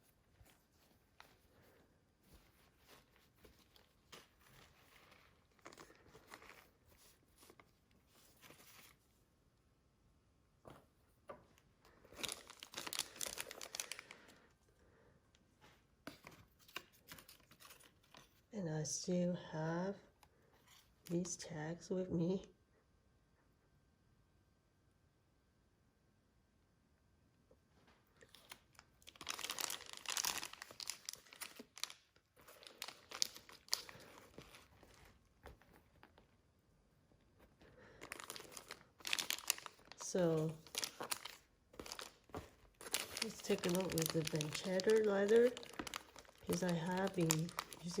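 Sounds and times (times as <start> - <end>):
packaging crinkling and rustling: 0.0 - 9.2, 10.7 - 14.6, 15.6 - 18.5, 27.8 - 48.0.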